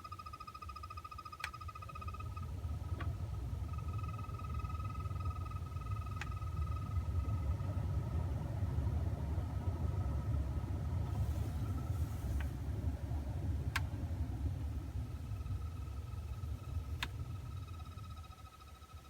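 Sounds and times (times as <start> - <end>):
heater blower motor rumble and whine: 1.4 - 19.0.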